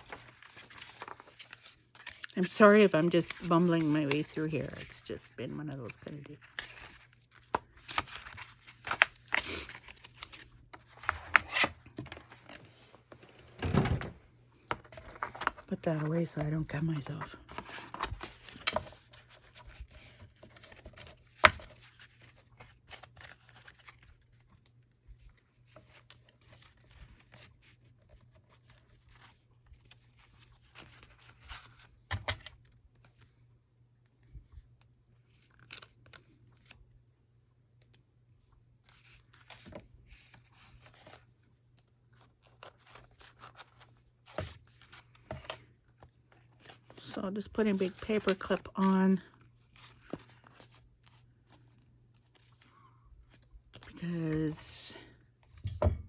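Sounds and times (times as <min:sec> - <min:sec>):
paper rustling and scraping: 0:00.0 - 0:05.1.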